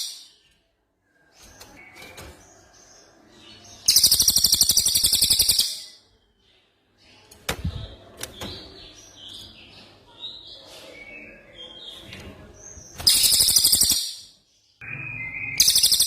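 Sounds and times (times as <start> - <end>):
bird chirps and whistles: 3.9 - 6.0, 13.0 - 16.0.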